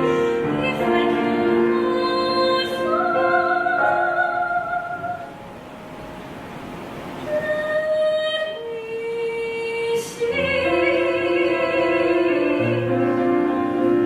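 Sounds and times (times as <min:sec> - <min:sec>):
slow classical music: 0:00.0 - 0:14.0.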